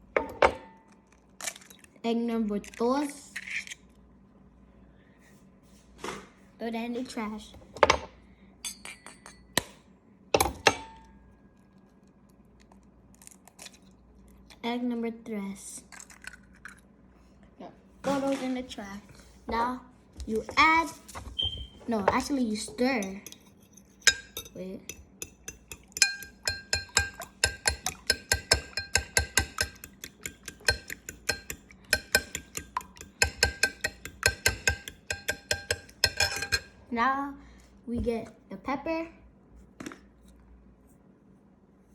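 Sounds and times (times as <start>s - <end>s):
egg tapping against bowl rim: 24.0s - 36.7s
bowl ringing: 25.2s - 36.7s.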